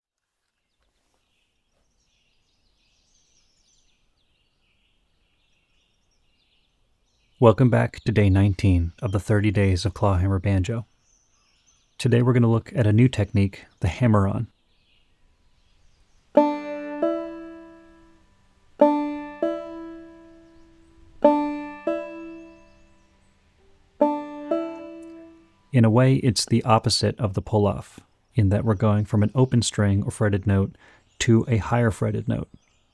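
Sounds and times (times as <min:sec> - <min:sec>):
faint bird chirps: 0:00.6 - 0:16.6, 0:17.6 - 0:32.9
banjo hammer-on notes: 0:16.4 - 0:18.2, 0:18.8 - 0:23.0, 0:23.9 - 0:26.0.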